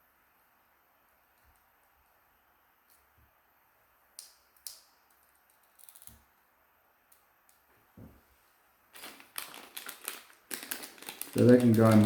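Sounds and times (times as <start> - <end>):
packaging rustling: 8.9 - 12.0.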